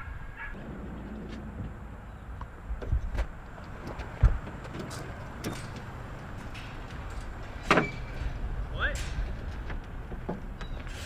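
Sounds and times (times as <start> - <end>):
knocks and thumps: 2.4 - 7.9.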